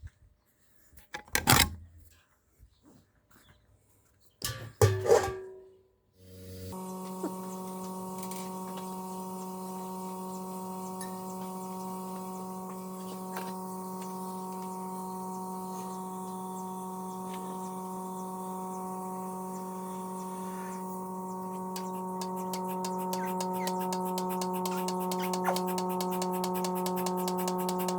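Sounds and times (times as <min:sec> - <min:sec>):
electric machine hum: 0:06.2 - 0:27.9
rapid even ticking: 0:21.7 - 0:27.9.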